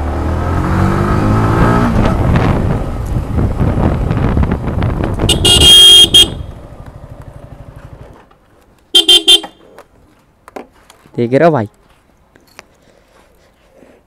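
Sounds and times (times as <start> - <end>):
motorcycle engine running: 3.3 - 8.2
motorcycle horn: 5.3 - 6.6, 8.9 - 9.6.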